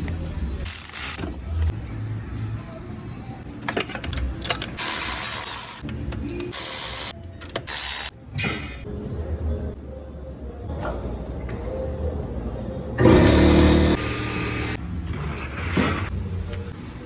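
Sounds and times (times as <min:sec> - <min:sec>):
starter motor grinding: 0:13.0 - 0:14.8.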